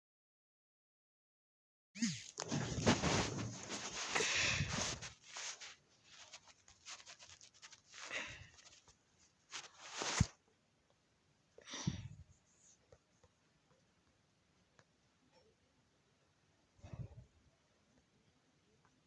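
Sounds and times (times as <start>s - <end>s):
rustling handling noise: 2.0s - 10.3s.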